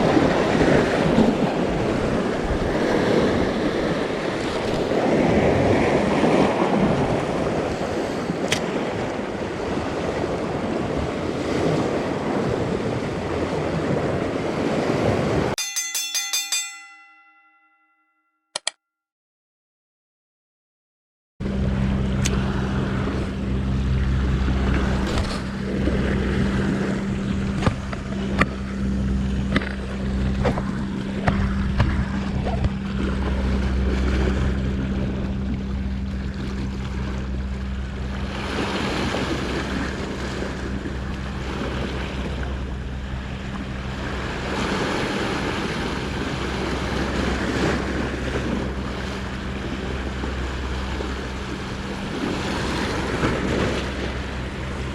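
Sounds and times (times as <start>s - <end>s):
low engine-like hum: 0.0s - 15.4s, 21.4s - 54.9s
surf on rocky shore: 0.0s - 17.8s, 24.2s - 54.9s
wind: 0.0s - 18.8s, 21.4s - 54.9s
sharp clicks: 18.6s - 18.8s.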